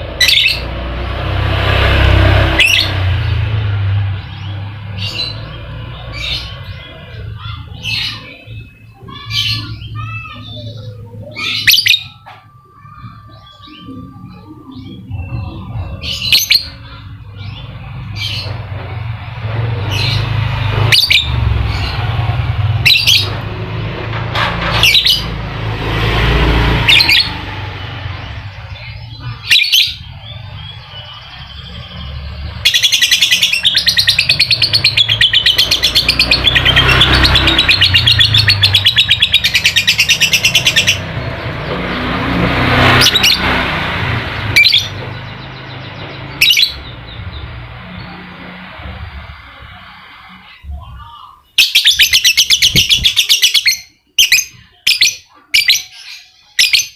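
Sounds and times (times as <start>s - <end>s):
lovebirds shrieking: 0.2s - 0.8s, 4.2s - 18.7s, 19.8s - 23.4s, 26.6s - 41.3s, 42.6s - 56.9s
bird chattering trill: 28.8s - 41.1s.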